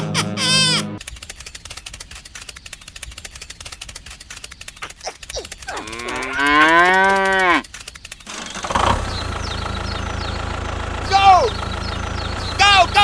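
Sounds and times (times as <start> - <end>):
faint rapid clicking: 1.0 - 8.3
cow mooing: 5.7 - 7.6.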